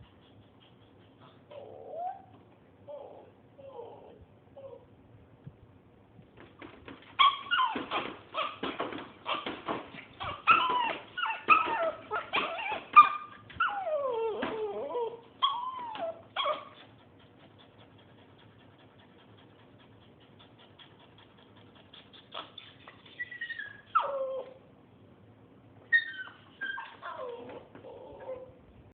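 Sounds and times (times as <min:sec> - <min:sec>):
dog whining: 0:00.0 - 0:04.9, 0:07.1 - 0:18.8, 0:20.3 - 0:24.7, 0:25.8 - 0:28.7
dog yelping: 0:00.2 - 0:04.8, 0:07.2 - 0:17.2, 0:21.8 - 0:24.6, 0:25.8 - 0:28.5.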